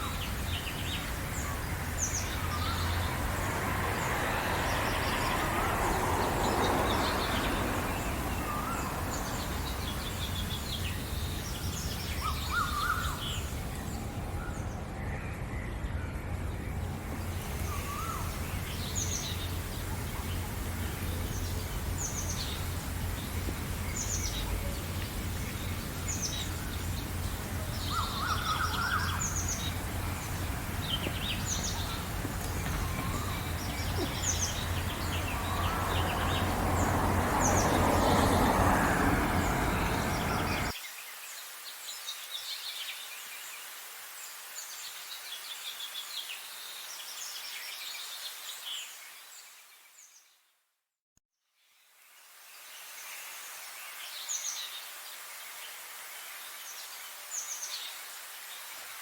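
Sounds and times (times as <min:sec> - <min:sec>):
low rumbling background noise: 0:00.0 - 0:40.8
songbirds chirping: 0:00.0 - 0:50.5.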